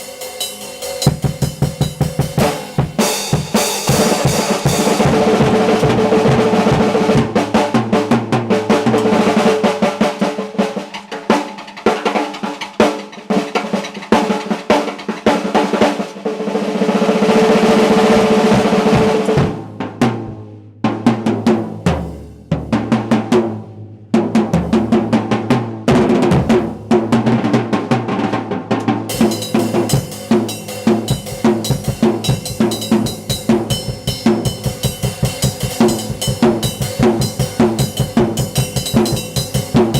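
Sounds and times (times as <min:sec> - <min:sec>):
snare and tom drum rolls: 0:00.9 - 0:39.9
cymbals ringing: 0:17.1 - 0:19.5, 0:29.1 - 0:39.9
bass drum kicks: 0:18.0 - 0:20.4.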